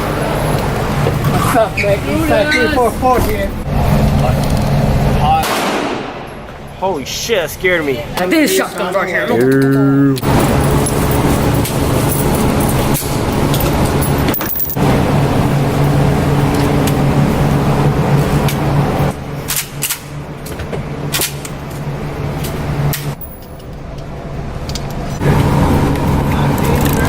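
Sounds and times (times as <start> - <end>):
low mechanical hum: 0.0 - 27.0
sharp cracks: 5.4 - 6.4.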